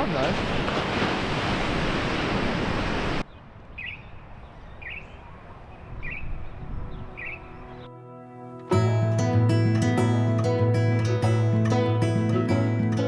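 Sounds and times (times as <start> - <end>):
bird chirping: 3.2 - 8.0.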